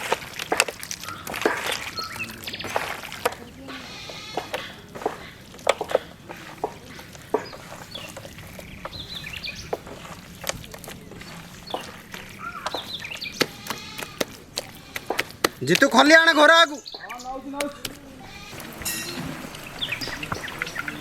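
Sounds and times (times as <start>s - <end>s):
chickens clucking: 0.0s - 21.0s
sharp knocks and taps: 2.6s - 9.0s, 11.7s - 16.0s.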